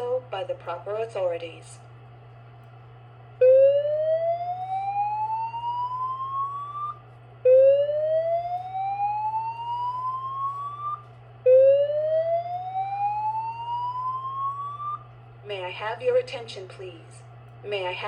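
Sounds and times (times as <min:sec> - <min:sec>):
steady low hum: 0:00.0 - 0:18.0
fire alarm whoop tone: 0:03.4 - 0:15.1.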